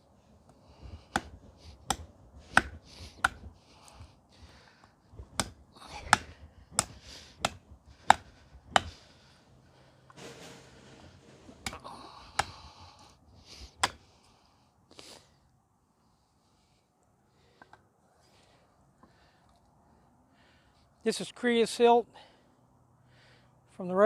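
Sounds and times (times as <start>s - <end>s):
knife chopping into hard wood: 1.0s - 3.5s, 5.2s - 9.0s, 11.6s - 12.7s, 13.8s - 14.0s.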